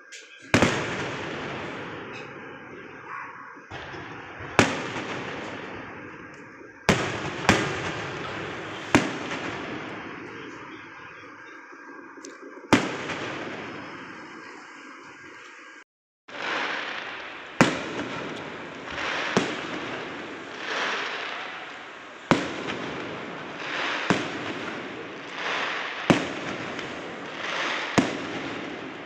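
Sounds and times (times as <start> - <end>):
firework bangs: 0.0 - 15.3, 16.3 - 29.0
distant fireworks rumble and crackle: 0.0 - 29.0.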